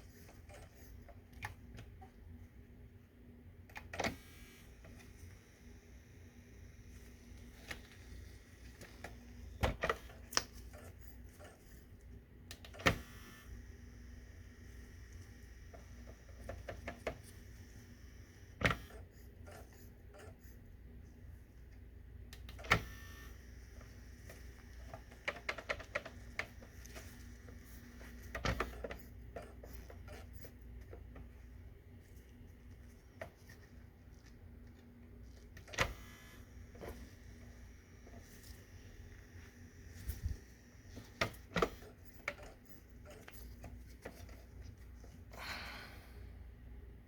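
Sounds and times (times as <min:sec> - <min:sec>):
faint steady hum: 0:00.0 - 0:47.0
disc drive clicks and knocks: 0:24.3 - 0:31.3, 0:35.5 - 0:36.2, 0:40.9 - 0:44.2.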